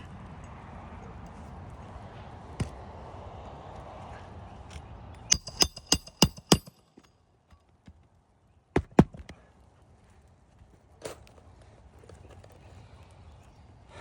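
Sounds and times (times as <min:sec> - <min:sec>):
hammer blows on nail: 0:05.3 - 0:06.8.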